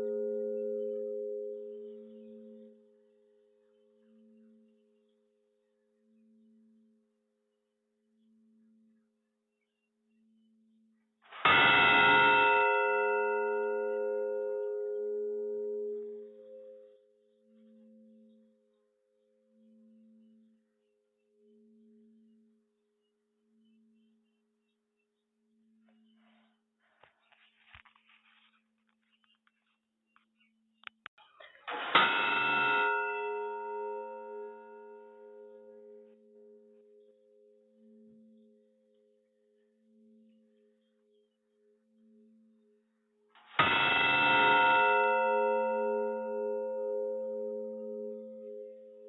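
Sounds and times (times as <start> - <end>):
meditation bell ringing: 0.0 - 3.2, 11.5 - 18.6, 31.8 - 38.9, 43.6 - 49.0.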